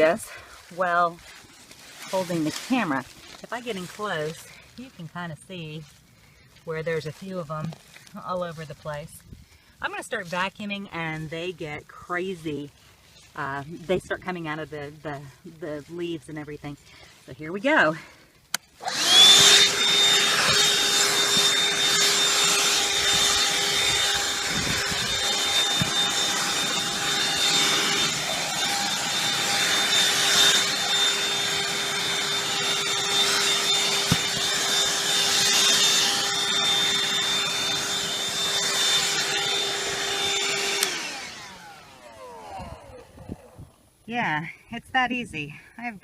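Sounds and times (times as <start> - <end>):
handheld vacuum motor whine: 17.9 - 43.8
rushing air: 18.9 - 30.4.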